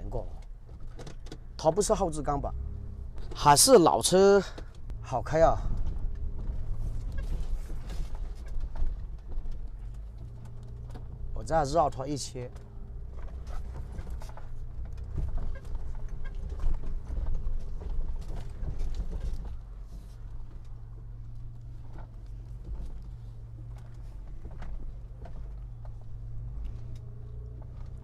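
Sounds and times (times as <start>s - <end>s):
engine running at low speed: 0.0s - 3.5s, 4.4s - 28.0s
irregular knocks and clicks: 0.4s - 1.6s, 5.7s - 11.3s, 12.5s - 28.0s.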